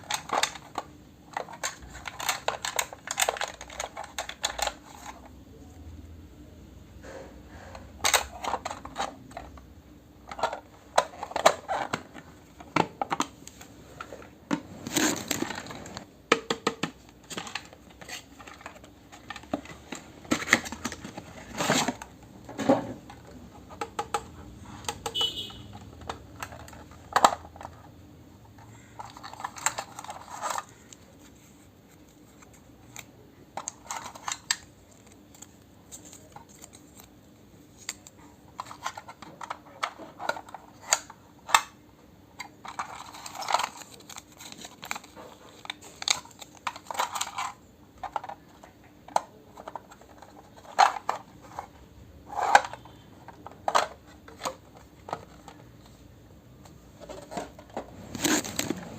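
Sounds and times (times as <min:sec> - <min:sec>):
packaging crinkling: 0:42.7 - 0:47.5, 0:58.1 - 0:58.9.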